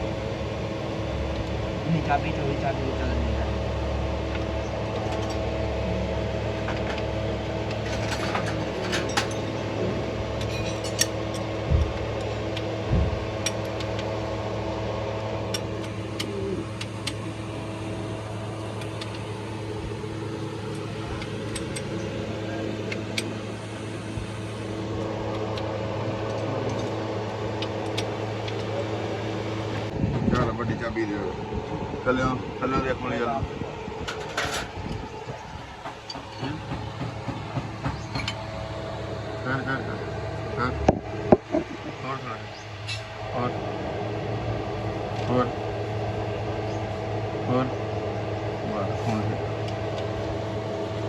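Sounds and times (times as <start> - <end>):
steady mechanical hum: 0.0 - 51.0
hand tools clinking and knocking: 7.8 - 9.6, 10.4 - 11.5.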